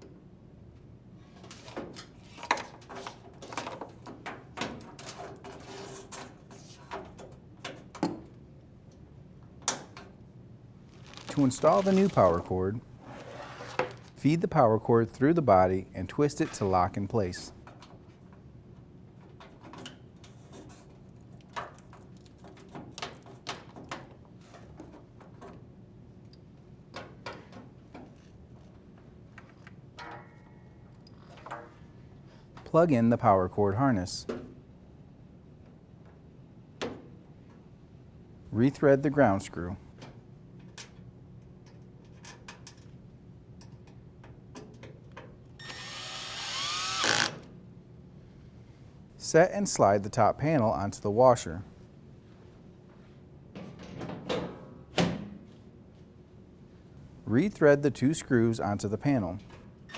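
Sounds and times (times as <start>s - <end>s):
screw and bit clicking: 45.6s - 47.4s
drill driver whining: 45.6s - 47.5s.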